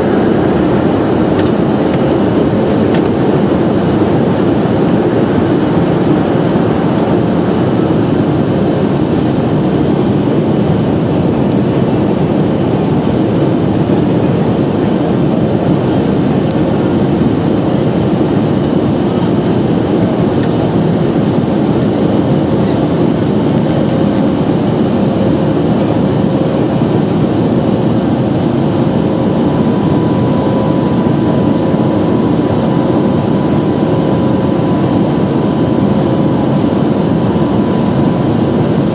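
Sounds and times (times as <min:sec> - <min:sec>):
high engine whine: 0:00.0 - 0:38.9
jet engines roaring: 0:00.0 - 0:38.9.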